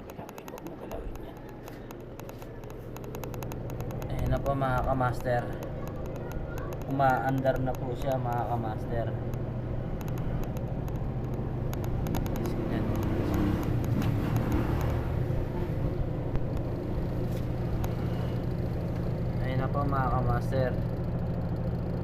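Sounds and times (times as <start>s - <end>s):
light clicks: 0.0s - 8.5s, 9.2s - 15.1s
spin-dryer motor humming: 0.0s - 22.0s.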